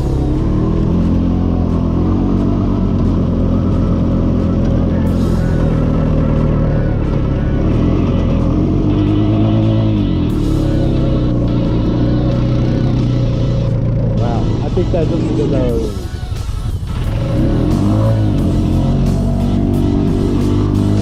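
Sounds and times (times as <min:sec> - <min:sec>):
atv engine under load: 0:00.0 - 0:16.2
background music: 0:00.0 - 0:21.0.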